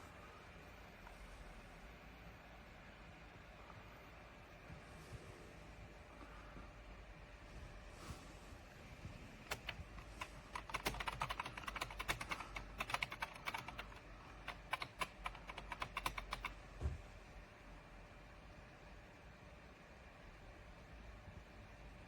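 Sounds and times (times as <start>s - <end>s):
keyboard typing: 9.4s - 16.6s.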